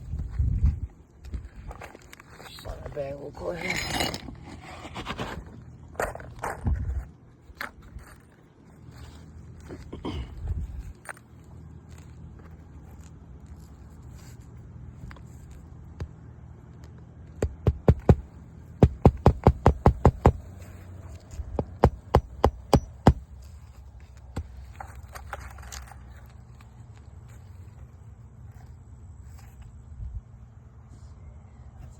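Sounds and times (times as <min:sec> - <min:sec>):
steady low hum: 0:03.7 - 0:31.9
hammer driving nails into shingles: 0:17.4 - 0:20.6, 0:21.6 - 0:23.3.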